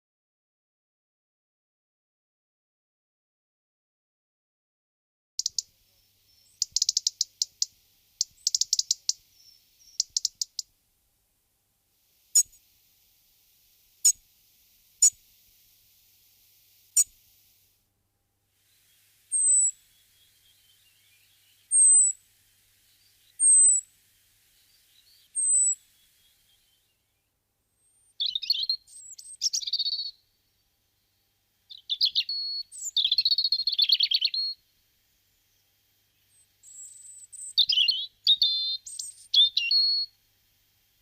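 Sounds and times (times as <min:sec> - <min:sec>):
bird calling with sharp ticks: 0:05.4 - 0:10.7, 0:19.3 - 0:22.2, 0:23.2 - 0:23.9, 0:27.8 - 0:30.2, 0:31.7 - 0:34.6, 0:36.3 - 0:40.1
faint twittering: 0:05.4 - 0:10.7, 0:12.0 - 0:17.8, 0:18.6 - 0:41.0.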